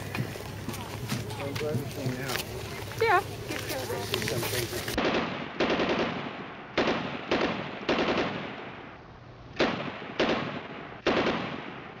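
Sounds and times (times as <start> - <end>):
gunshot-like bangs with echo: 5.0 - 8.8, 9.6 - 12.0.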